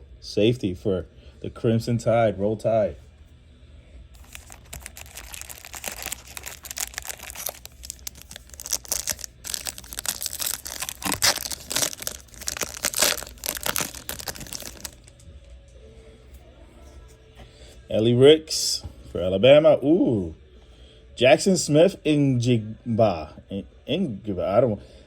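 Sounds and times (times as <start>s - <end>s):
foil wrapper crinkling and tearing: 4.2s - 15.2s.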